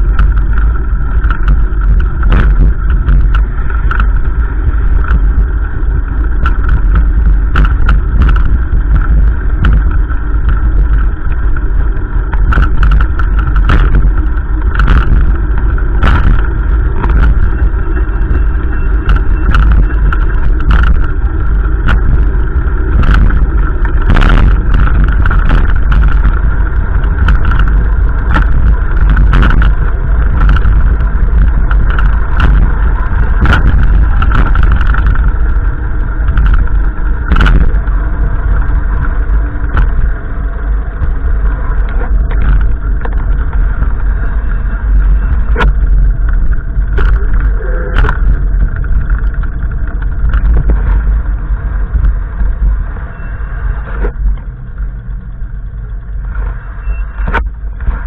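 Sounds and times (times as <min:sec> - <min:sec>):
wind buffeting microphone: 0:00.0 - 0:58.0.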